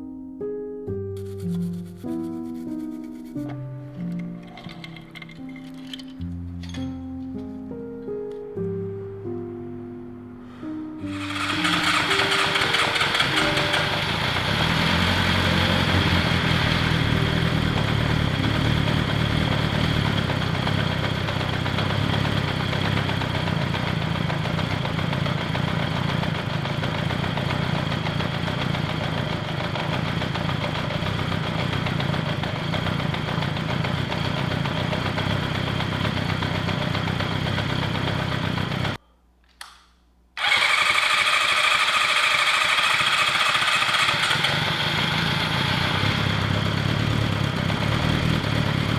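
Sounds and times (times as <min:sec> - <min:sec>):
motorcycle engine running: 0:11.1 - 0:39.0, 0:40.4 - 0:48.9.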